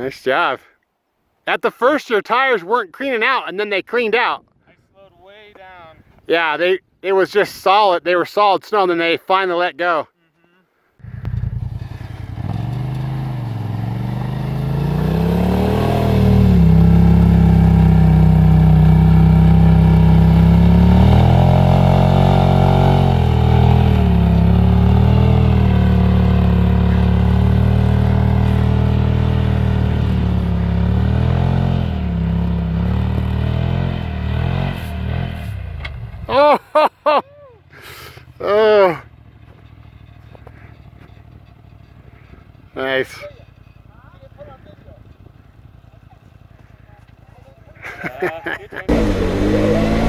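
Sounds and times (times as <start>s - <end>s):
engine revving: 11.0s - 36.3s, 48.9s - 50.0s.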